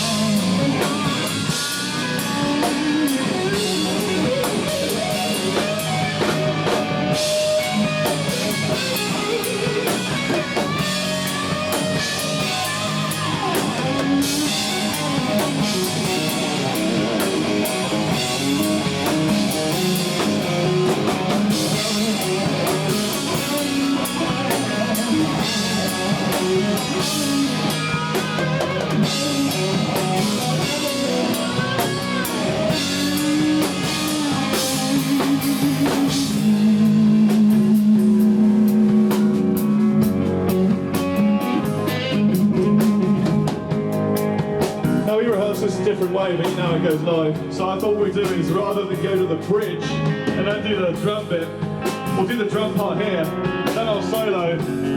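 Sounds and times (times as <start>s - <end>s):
drum kit: 0.0s - 54.9s
electric guitar with bent notes: 0.0s - 54.9s.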